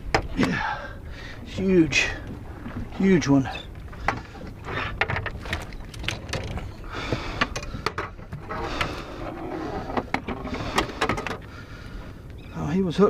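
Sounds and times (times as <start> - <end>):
fish handled in landing net: 4.9 - 8.2.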